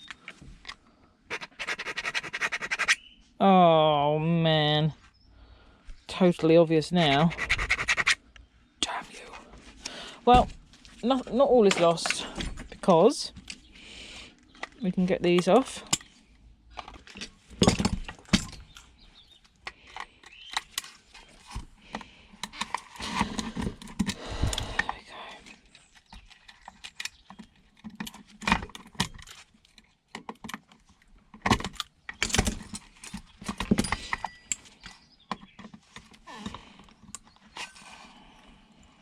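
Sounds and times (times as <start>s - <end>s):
hand tools clinking on metal parts: 32.1s - 35.1s.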